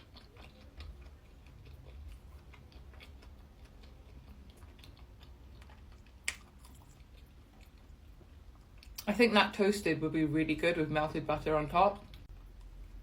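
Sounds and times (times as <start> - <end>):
low steady hum: 0.0 - 13.0
mouth clicks of chewing: 0.1 - 7.0.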